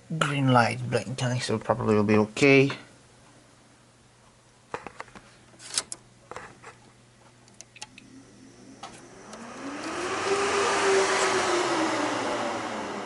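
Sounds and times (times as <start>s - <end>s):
server fans whining: 5.2s - 13.0s.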